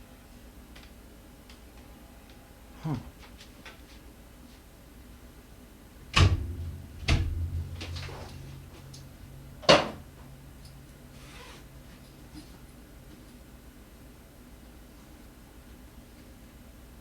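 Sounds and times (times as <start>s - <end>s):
low ringing hum: 5.9s - 13.0s.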